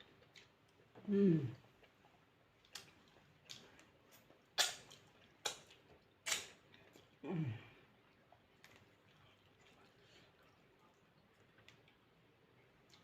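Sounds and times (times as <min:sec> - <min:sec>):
lip smacks and chewing: 0:00.0 - 0:07.2, 0:08.0 - 0:13.0
person humming mm: 0:01.0 - 0:01.6, 0:07.2 - 0:07.7.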